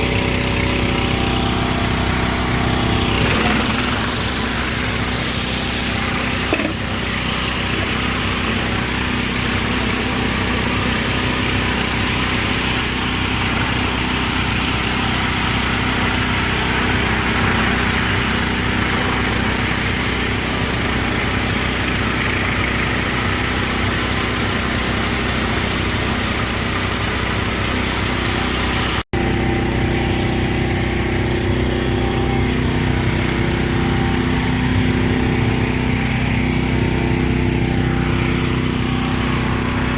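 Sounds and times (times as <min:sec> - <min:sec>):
pressure washer engine running: 0:00.0 - 0:39.9.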